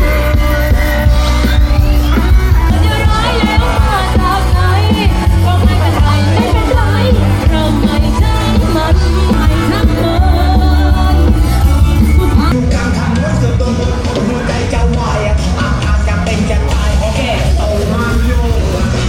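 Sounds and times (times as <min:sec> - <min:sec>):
loud pop music with singing: 0:00.0 - 0:19.0.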